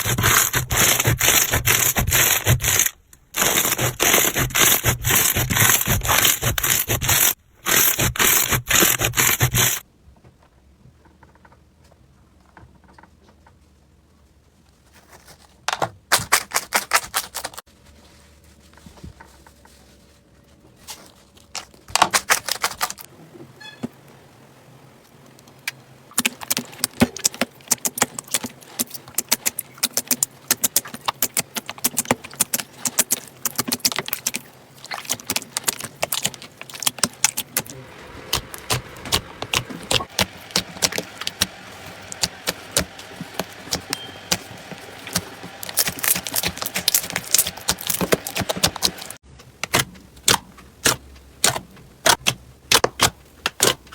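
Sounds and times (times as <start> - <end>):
slime crackling and popping: 26.1 - 50.4.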